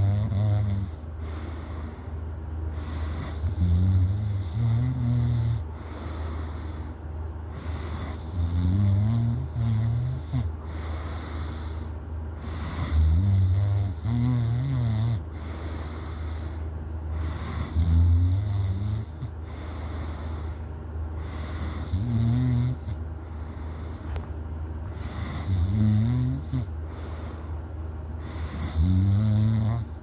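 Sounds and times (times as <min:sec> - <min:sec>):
person snoring: 0:00.0 - 0:01.0, 0:02.8 - 0:06.6, 0:07.6 - 0:16.5, 0:17.2 - 0:20.6, 0:21.2 - 0:23.0, 0:25.0 - 0:26.7, 0:28.2 - 0:30.0
person breathing: 0:00.8 - 0:03.6, 0:05.6 - 0:08.4, 0:10.2 - 0:13.1, 0:15.2 - 0:17.9, 0:19.1 - 0:22.1, 0:22.8 - 0:25.7, 0:26.3 - 0:28.8.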